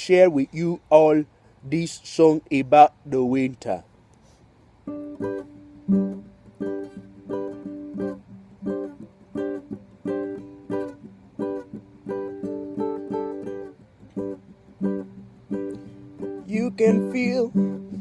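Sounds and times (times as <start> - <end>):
acoustic string instrument strumming: 4.2 - 18.0.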